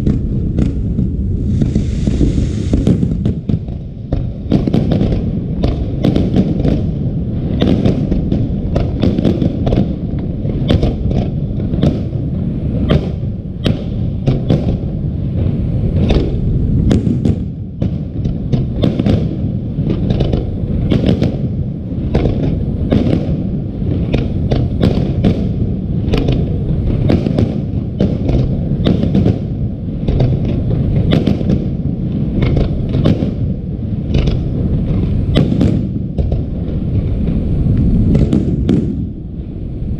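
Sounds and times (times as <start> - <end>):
low rumble: 0.0 - 5.4
fireworks bangs: 0.0 - 39.9.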